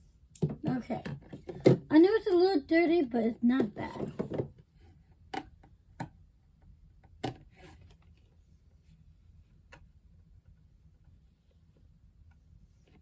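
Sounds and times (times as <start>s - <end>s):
faint room hum: 0.0s - 13.0s.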